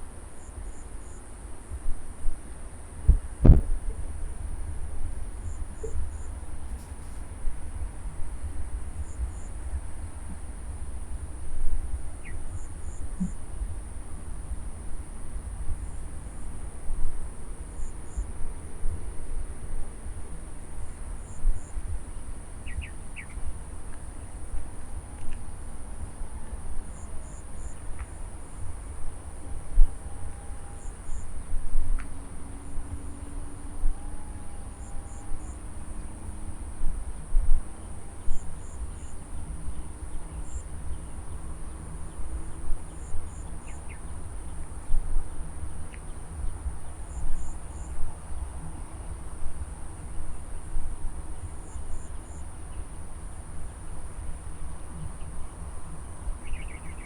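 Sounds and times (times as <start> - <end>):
insect chirps: 0.4 - 1.3, 3.1 - 57.0
wind buffeting microphone: 3.0 - 46.9
insects trilling: 3.4 - 57.0.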